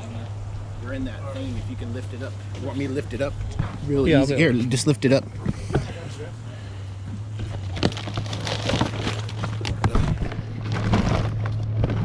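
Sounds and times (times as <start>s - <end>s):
steady low hum: 0.0s - 12.0s
knocks and rustling: 7.0s - 12.0s.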